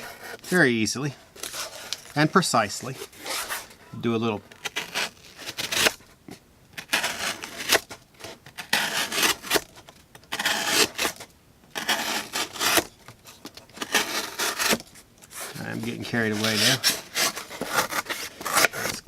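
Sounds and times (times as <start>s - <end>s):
knife slicing through cardboard: 4.6s - 6.0s, 6.8s - 9.7s, 10.3s - 11.2s, 11.8s - 12.9s, 13.7s - 19.0s.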